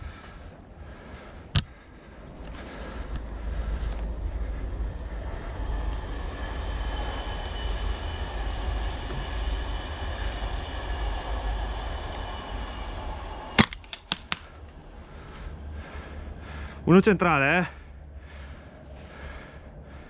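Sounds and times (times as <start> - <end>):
faint whine: 0.0 - 20.0
rumbling rushing background noise: 0.0 - 20.0
airsoft gun firing: 13.6 - 14.6.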